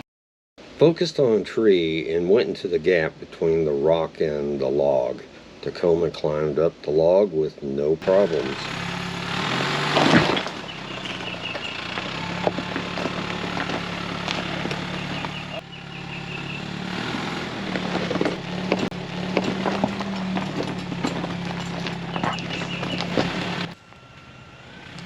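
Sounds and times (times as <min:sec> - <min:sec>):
pickup engine at low revs: 0:08.0 - 0:25.0
rocks clicking under tyres: 0:09.5 - 0:24.0.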